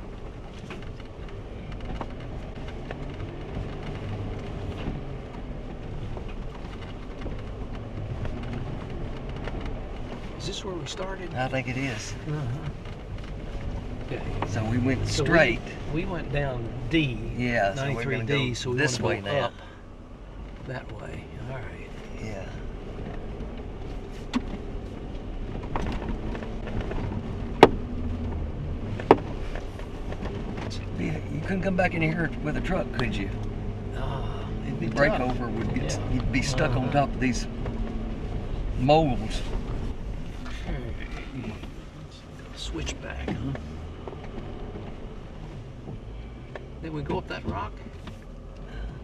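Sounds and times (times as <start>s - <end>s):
low engine rumble: 0.0s - 49.0s
vehicle bumping knocks: 23.0s - 31.0s.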